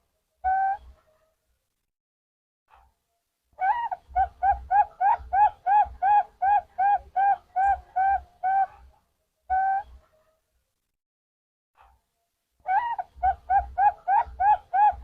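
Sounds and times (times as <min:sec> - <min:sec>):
dove cooing: 0:00.4 - 0:01.0, 0:03.6 - 0:08.9, 0:09.5 - 0:10.0, 0:12.7 - 0:15.0.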